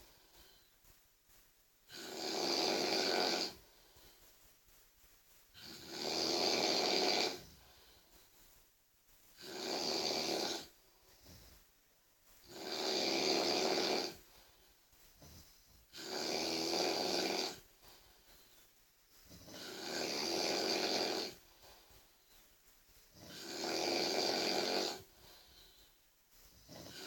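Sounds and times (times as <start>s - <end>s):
person snoring loudly: 1.9s - 3.6s, 5.6s - 7.6s, 9.4s - 10.7s, 12.4s - 14.2s, 15.9s - 17.6s, 19.4s - 21.4s, 23.2s - 25.1s, 26.7s - 27.0s.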